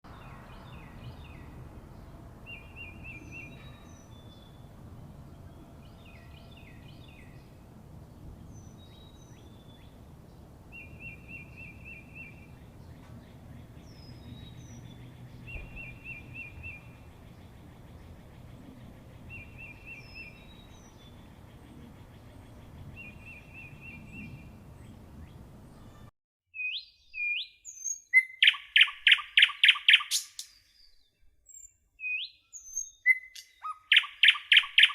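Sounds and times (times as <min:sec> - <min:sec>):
high bird chirps: 0:10.7 - 0:18.2, 0:25.2 - 0:34.9
bird trilling: 0:26.6 - 0:30.6, 0:32.0 - 0:34.9.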